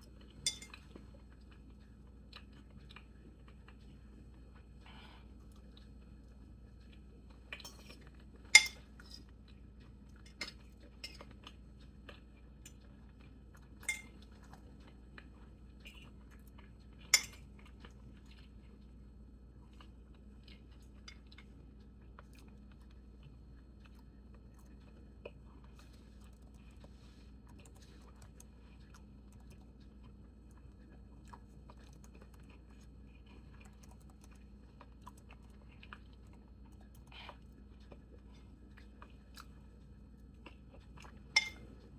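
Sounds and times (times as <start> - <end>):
faint steady hum: 0.0 - 41.9
soft chewing: 0.0 - 41.9
cutlery clinking on a plate: 0.5 - 0.8, 8.5 - 8.9, 13.8 - 14.1, 17.2 - 17.4, 41.4 - 41.6.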